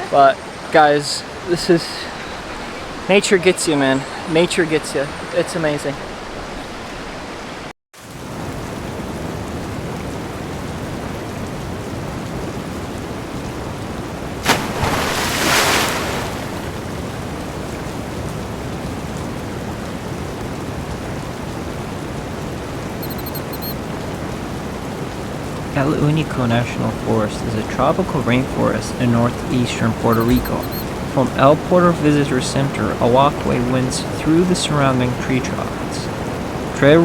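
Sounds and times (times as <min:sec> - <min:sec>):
river water rushing: 0:14.4 - 0:17.0.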